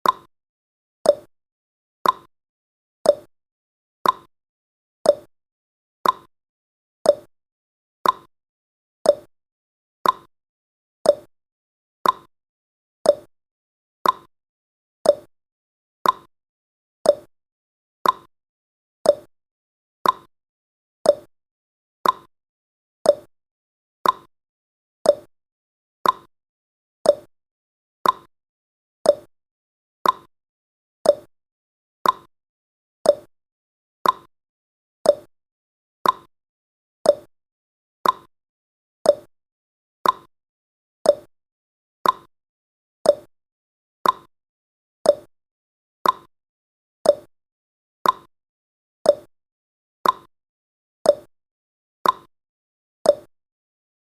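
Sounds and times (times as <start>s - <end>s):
clock ticking: 28.0s - 28.3s, 34.0s - 34.3s, 36.0s - 36.3s, 38.0s - 38.3s, 40.0s - 40.3s, 42.0s - 42.3s, 44.0s - 44.3s, 46.0s - 46.3s.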